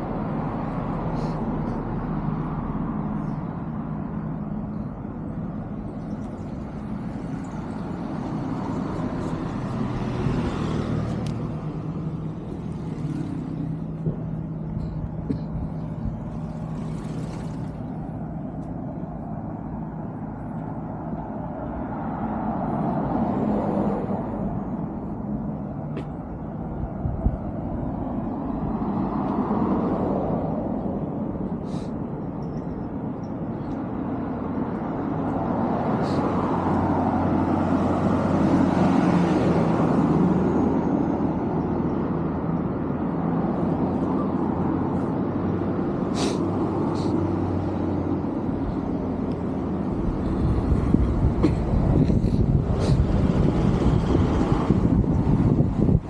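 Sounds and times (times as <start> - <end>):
engine running steadily: 0.0 - 23.0, 41.6 - 56.0
vehicles passing: 0.0 - 56.0.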